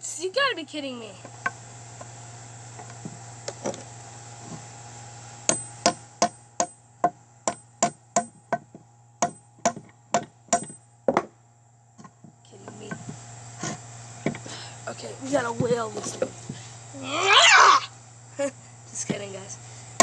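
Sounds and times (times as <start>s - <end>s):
low steady hum: 0.0s - 20.0s
hammer striking wood: 5.5s - 11.3s.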